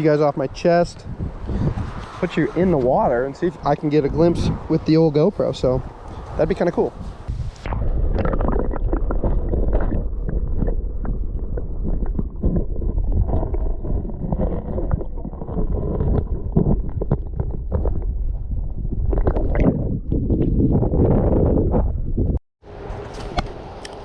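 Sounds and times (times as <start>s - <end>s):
underwater river rumble and gurgling: 7.3s - 22.4s.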